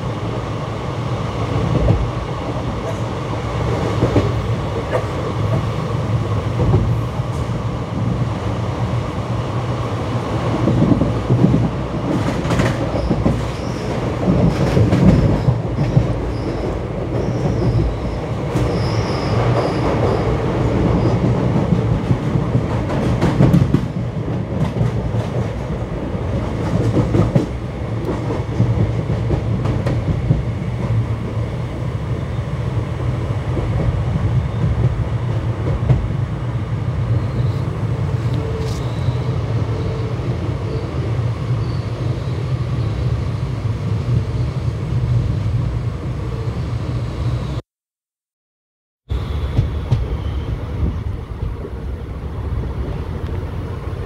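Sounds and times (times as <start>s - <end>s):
train rumble: 0.0s - 47.4s, 49.1s - 54.0s
high wheel squeal: 15.1s - 20.4s.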